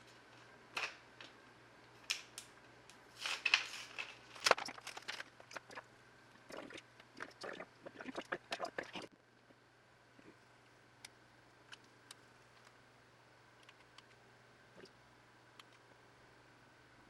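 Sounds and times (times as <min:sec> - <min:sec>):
packaging crinkling: 0:03.2 - 0:05.7.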